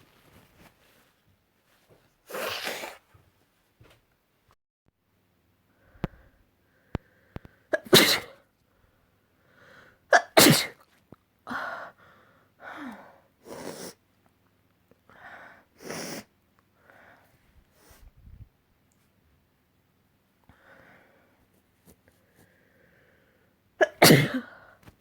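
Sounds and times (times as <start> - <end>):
person sneezing: 2.3 - 3.1, 7.7 - 8.4, 10.1 - 10.8, 23.8 - 24.6.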